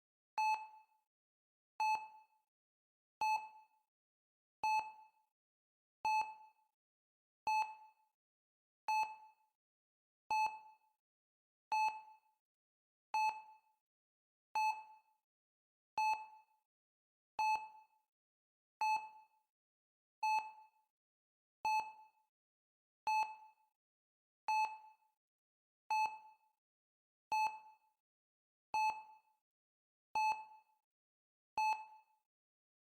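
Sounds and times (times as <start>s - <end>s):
heart rate monitor beeping: 28.8s - 29.0s, 30.2s - 30.6s, 31.6s - 32.0s.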